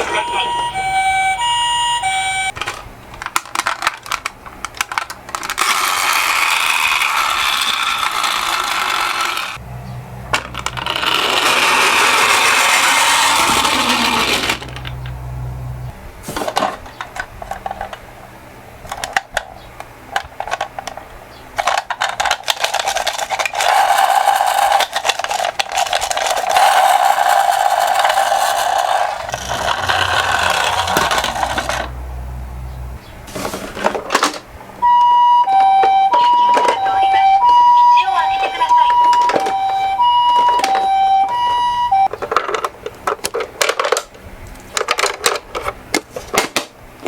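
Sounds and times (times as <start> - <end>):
toy two-tone siren: 0.0 - 2.6, 34.8 - 42.1
toy cars clattering and rolling: 2.5 - 9.6, 10.3 - 15.1, 16.3 - 18.1, 18.8 - 31.9, 33.3 - 34.5, 35.6 - 37.2, 38.4 - 41.4, 42.0 - 46.8.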